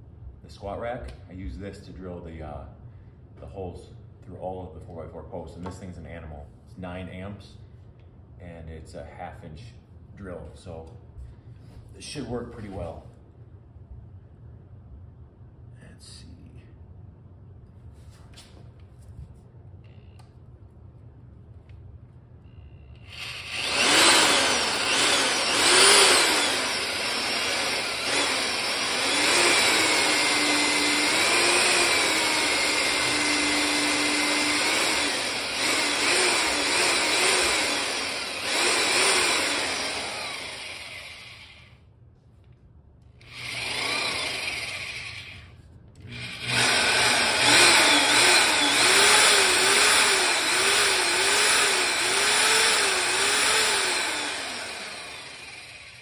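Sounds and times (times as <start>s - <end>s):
drill boring into concrete: 22.9s - 41.8s, 43.2s - 56.0s.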